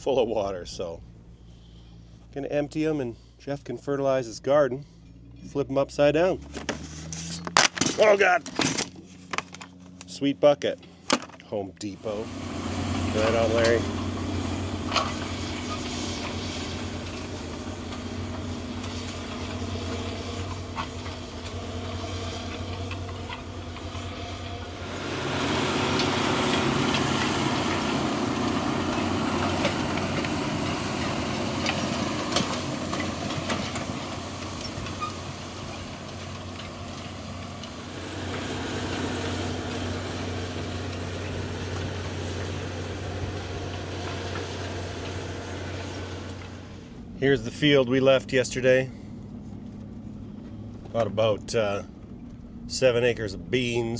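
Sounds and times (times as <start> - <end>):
heavy vehicle engine running: 0.0 - 53.9.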